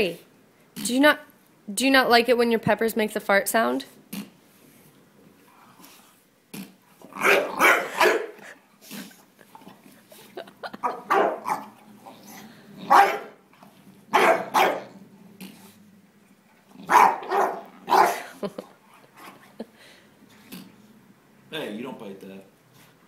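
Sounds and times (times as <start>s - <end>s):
dog barking: 7.2s - 8.4s, 10.8s - 11.8s, 12.9s - 13.4s, 14.1s - 14.9s, 16.9s - 18.3s.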